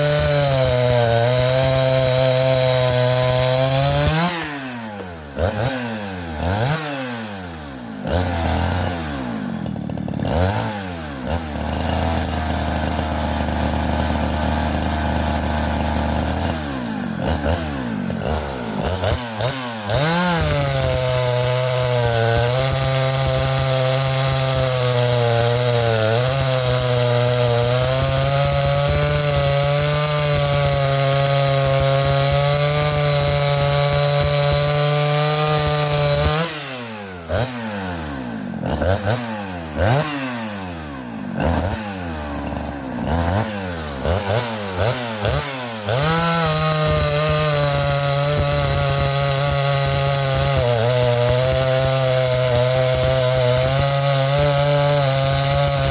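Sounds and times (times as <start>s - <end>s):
chainsaw revving: 0.0s - 55.9s.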